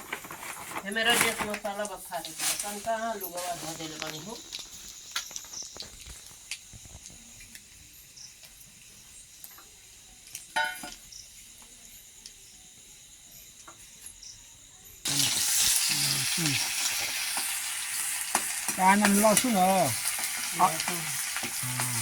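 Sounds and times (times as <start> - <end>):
food frying in hot oil: 2.1 - 11.5, 14.8 - 22.0
faint hiss: 13.2 - 22.0.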